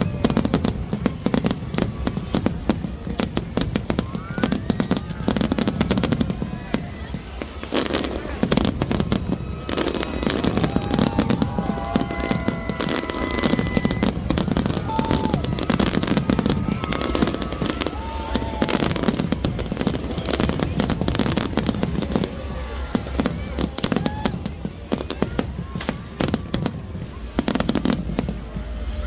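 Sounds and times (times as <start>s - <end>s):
faint voices: 0.0s - 29.0s
fireworks bangs and crackles: 0.0s - 29.0s
whistling fireworks: 0.0s - 29.0s.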